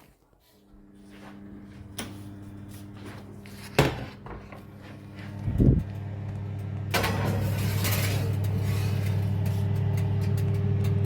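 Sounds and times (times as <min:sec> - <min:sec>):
low electrical hum: 0:00.3 - 0:11.0
appliance door shutting: 0:03.7 - 0:04.8, 0:06.8 - 0:10.6.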